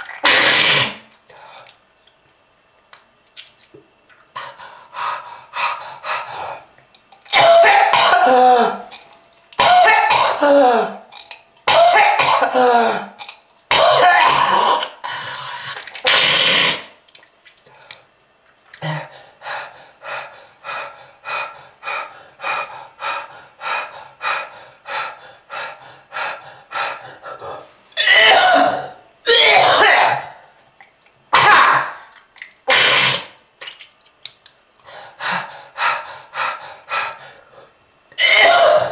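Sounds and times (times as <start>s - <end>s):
harsh hacking cough: 7.3s - 8.8s, 9.6s - 10.7s, 11.6s - 13.1s, 13.7s - 14.8s, 28.0s - 30.3s, 32.7s - 33.3s, 38.2s - 38.9s.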